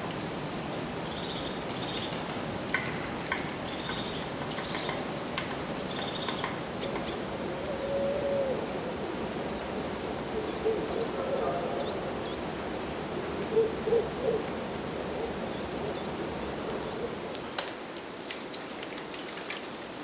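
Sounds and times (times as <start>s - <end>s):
birds calling: 0.2s - 8.4s.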